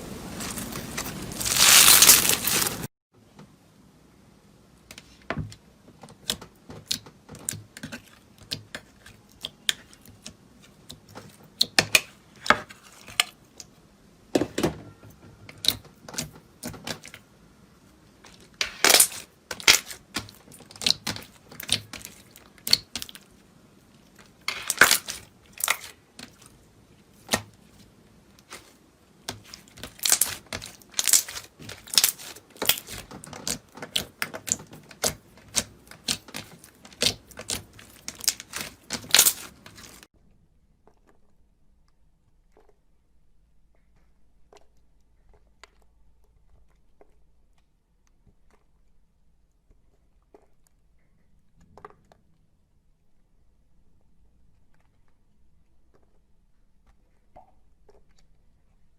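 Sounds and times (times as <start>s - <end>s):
crunchy material crackling when crushed: 0.0s - 2.9s, 18.4s - 23.4s, 24.2s - 40.1s.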